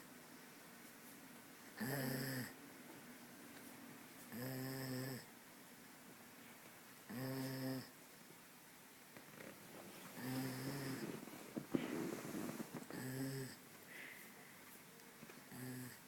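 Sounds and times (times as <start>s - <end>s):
dog snoring: 1.8s - 2.6s, 4.3s - 5.3s, 7.1s - 8.0s, 10.2s - 13.6s, 15.5s - 16.0s
quiet dog breathing: 9.9s - 14.8s.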